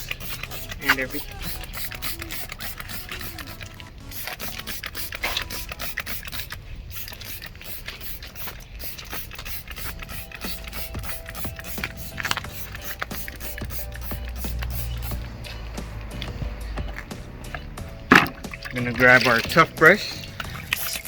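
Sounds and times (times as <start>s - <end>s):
bicycle freewheel ticking: 0.0s - 16.3s.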